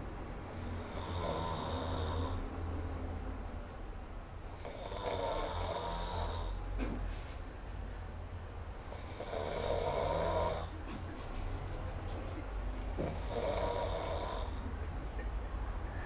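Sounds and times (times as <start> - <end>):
man snoring: 0.6 - 2.4, 4.5 - 6.6, 8.8 - 10.7, 13.0 - 14.6.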